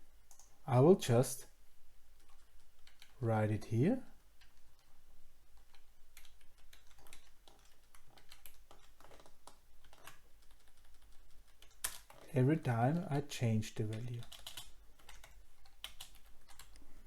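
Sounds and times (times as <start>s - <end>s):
typing on a keyboard: 0.3s - 0.6s, 2.2s - 3.2s, 5.5s - 12.4s, 13.2s - 16.8s.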